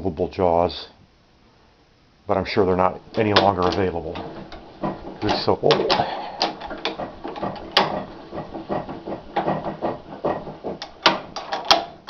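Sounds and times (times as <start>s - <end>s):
vise metallic clicks and scraping: 3.0s - 12.0s.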